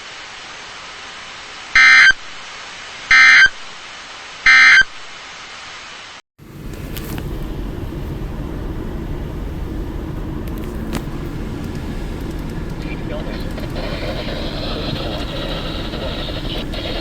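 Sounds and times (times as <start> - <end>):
radio hiss: 0.0 - 6.2, 11.1 - 17.0
screeching data bursts: 1.8 - 2.3, 12.9 - 17.0
steady low rumble: 6.4 - 17.0.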